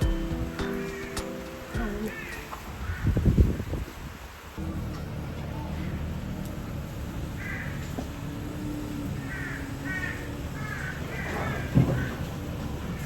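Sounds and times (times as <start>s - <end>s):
crow cawing: 2.1s - 3.2s, 7.4s - 7.8s, 9.2s - 12.3s.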